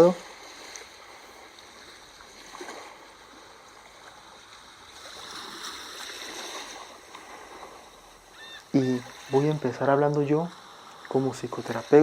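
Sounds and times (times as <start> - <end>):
sea waves washing: 0.0 - 12.0.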